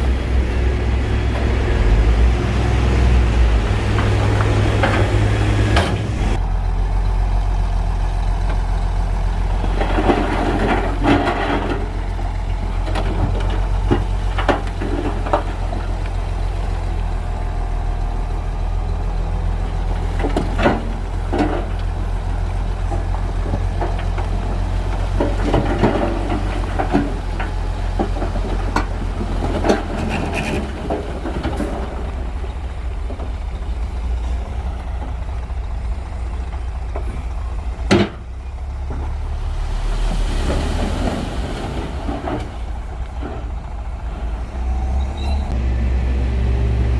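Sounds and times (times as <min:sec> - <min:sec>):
bulldozer diesel engine droning: 0:00.0 - 0:46.9
tracks clanking and scraping stone: 0:03.4 - 0:06.4, 0:08.3 - 0:16.9, 0:19.8 - 0:44.5.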